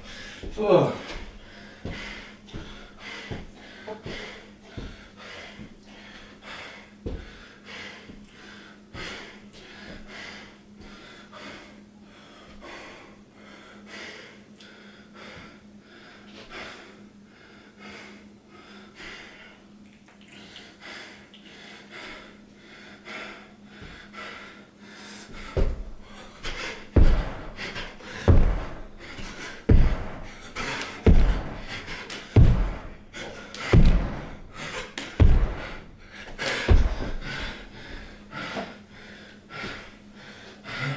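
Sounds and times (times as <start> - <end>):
person panting: 0.0 - 19.6, 20.5 - 40.9
heavy laboured breathing: 0.0 - 19.7, 20.4 - 40.9
loud thumps: 25.4 - 38.1.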